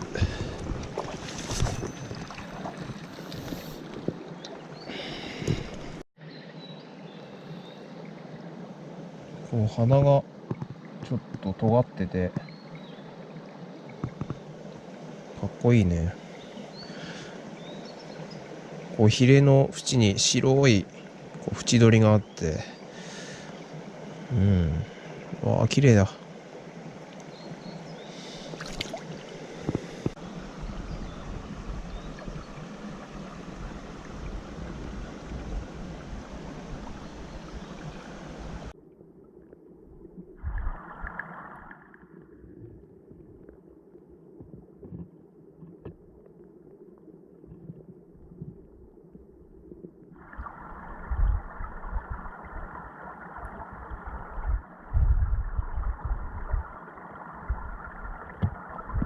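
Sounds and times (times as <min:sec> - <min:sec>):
stream water rushing and gurgling: 0:00.0 - 0:48.3, 0:50.0 - 0:59.0
low thumps: 0:53.8 - 0:56.7.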